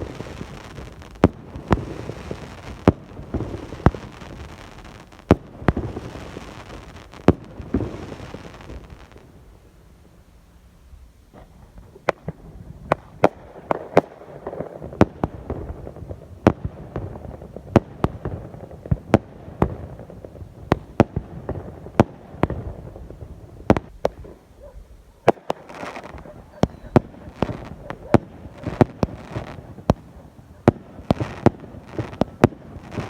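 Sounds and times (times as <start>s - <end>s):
fireworks bangs: 0.0s - 9.8s, 11.3s - 33.0s.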